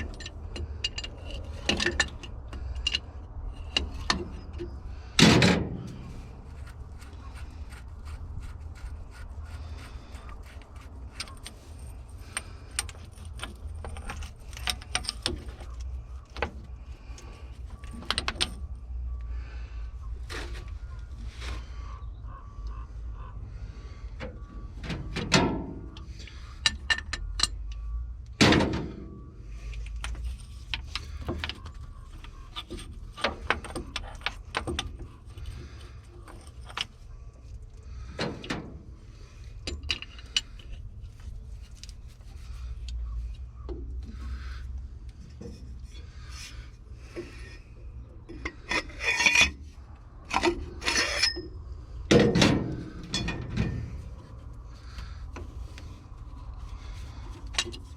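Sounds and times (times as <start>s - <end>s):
hand tools clinking on metal: 48.3s - 49.6s, 50.3s - 51.5s.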